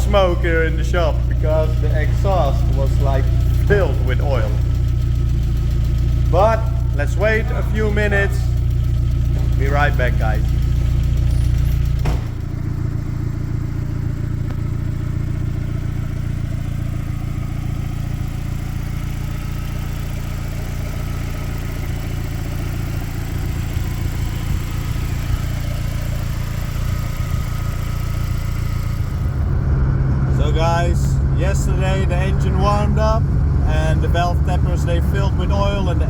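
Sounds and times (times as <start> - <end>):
car engine idling: 0.0 - 36.0.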